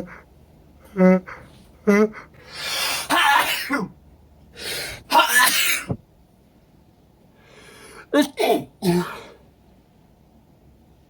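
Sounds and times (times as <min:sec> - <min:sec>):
man sneezing: 0:02.0 - 0:03.9, 0:05.0 - 0:06.0, 0:08.2 - 0:09.4.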